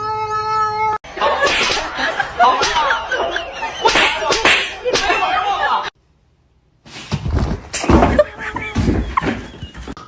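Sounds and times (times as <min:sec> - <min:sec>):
people's voices: 0:01.1 - 0:05.9.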